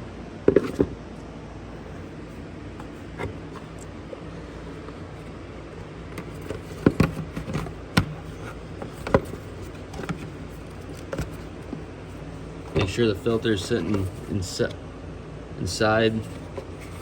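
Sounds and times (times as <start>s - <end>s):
steady low hum: 0.0s - 17.0s
plastic cover knocks and scrapes: 0.5s - 1.0s, 6.2s - 11.9s.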